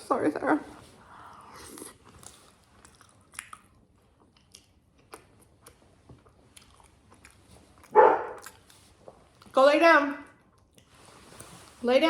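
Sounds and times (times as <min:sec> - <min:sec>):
wet chewing mouth clicks: 0:01.6 - 0:09.5.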